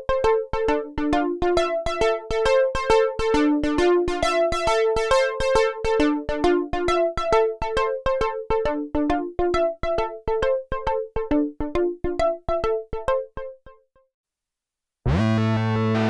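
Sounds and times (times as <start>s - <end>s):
synthesizer plucked arpeggio: 0.0s - 13.8s, 15.1s - 16.0s.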